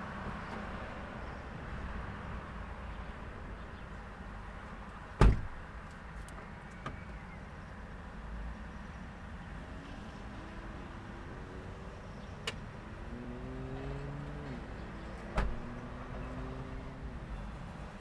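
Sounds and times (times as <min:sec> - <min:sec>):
traffic rumble: 0:00.0 - 0:18.0
vehicle accelerating: 0:09.6 - 0:17.8.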